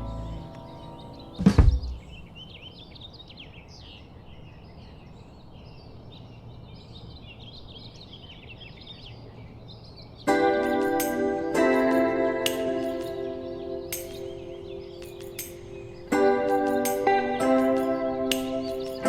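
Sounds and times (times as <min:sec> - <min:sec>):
steady outdoor hiss: 0:00.0 - 0:08.8, 0:09.4 - 0:19.0
small birds chirping: 0:00.0 - 0:19.0
loud sudden thump: 0:01.4 - 0:02.2.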